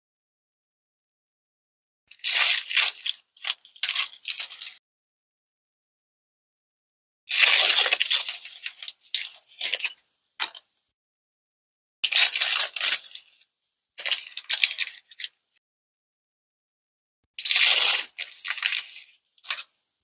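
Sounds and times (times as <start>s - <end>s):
plastic packaging crinkling: 14.0s - 15.3s, 17.5s - 19.7s.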